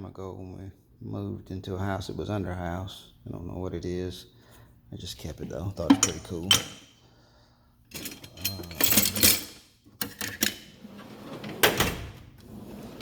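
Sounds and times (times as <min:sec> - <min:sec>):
metal tools clanking: 0:05.8 - 0:06.8, 0:07.9 - 0:10.7
toolbox drawer sliding and closing: 0:07.9 - 0:13.0.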